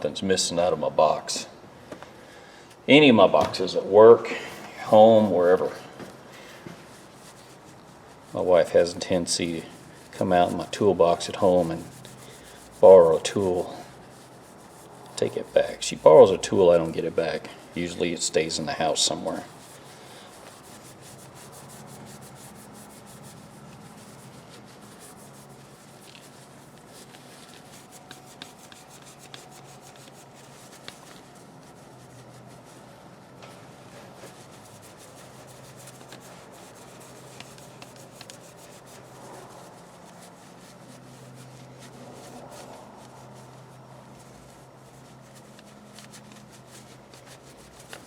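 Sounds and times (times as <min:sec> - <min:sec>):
rag scrubbing metal: 0:06.8 - 0:32.8.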